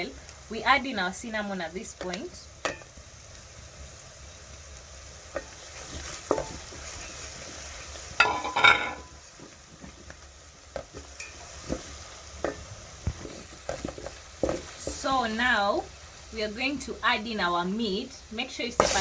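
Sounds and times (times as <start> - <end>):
onions sizzling in oil: 0.0 - 19.0.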